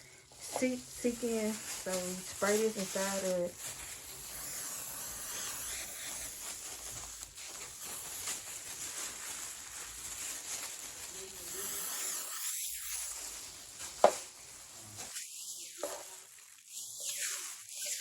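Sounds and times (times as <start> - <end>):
aerosol spray can hissing: 1.0 - 6.8, 11.5 - 13.1.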